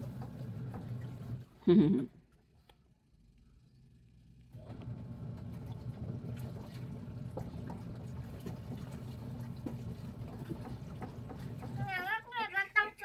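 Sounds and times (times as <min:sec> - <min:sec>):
water running from a tap: 0:04.6 - 0:12.3.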